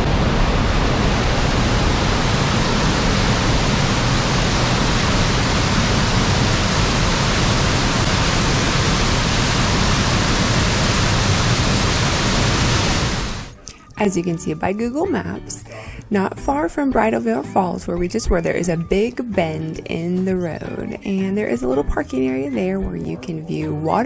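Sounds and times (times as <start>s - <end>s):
rushing water: 0.0s - 13.6s.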